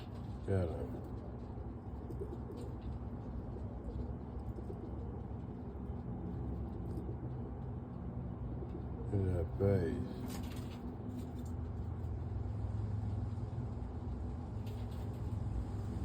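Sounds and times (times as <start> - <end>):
pigeons cooing: 0.0 - 11.1
steady low hum: 0.0 - 16.0.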